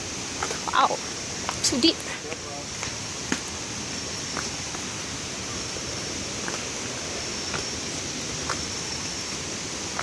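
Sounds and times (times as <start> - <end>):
waterfall roaring: 0.0 - 10.0.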